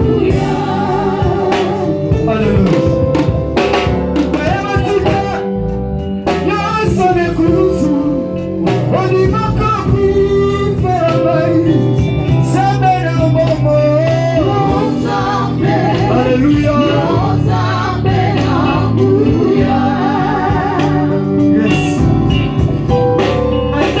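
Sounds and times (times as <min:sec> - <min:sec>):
voices singing with vibrato: 0:00.0 - 0:03.2, 0:14.4 - 0:22.4
band with guitar: 0:00.0 - 0:24.0.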